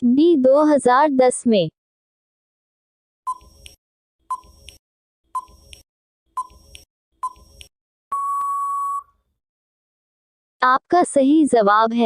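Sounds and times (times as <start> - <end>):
long steady beep: 8.1 - 9.1
short beeps: 8.1 - 9.1.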